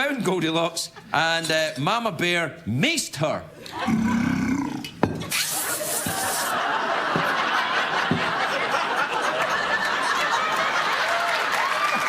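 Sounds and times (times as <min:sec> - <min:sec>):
studio audience laughing: 0:05.2 - 0:12.0
aerosol spray hiss: 0:05.3 - 0:06.6.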